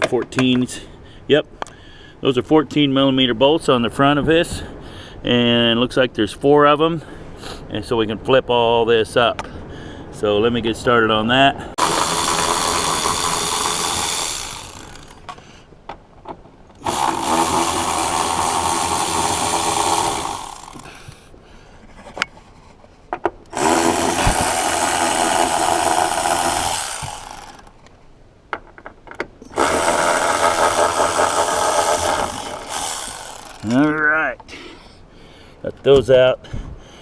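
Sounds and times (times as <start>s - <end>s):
power ratchet motor whine: 11.8s - 15.2s, 16.8s - 20.9s, 23.5s - 27.7s, 29.4s - 33.9s.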